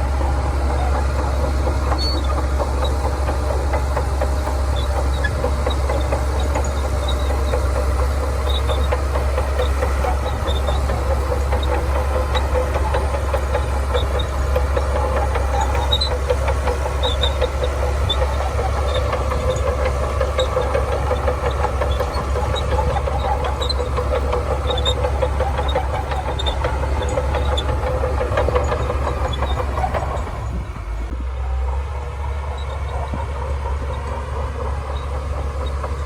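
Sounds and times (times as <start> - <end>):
bulldozer diesel engine running: 0.0 - 36.0.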